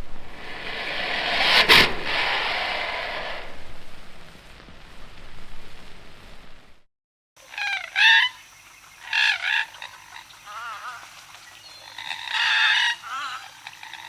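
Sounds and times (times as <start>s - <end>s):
brief hiss: 0.0s - 6.6s
wavering animal calls: 7.4s - 8.4s, 9.0s - 14.0s.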